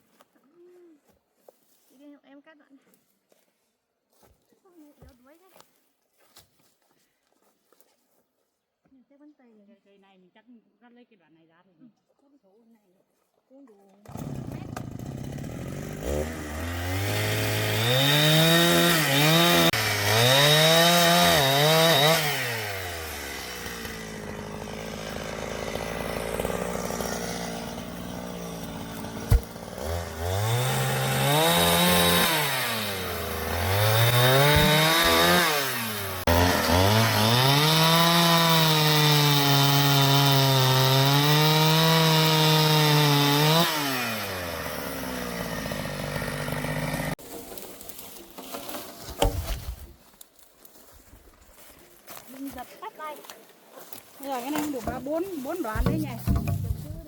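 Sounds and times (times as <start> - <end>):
chainsaw cutting a log: 14.0 - 48.0, 54.5 - 57.0
sharp knock: 55.8 - 57.0.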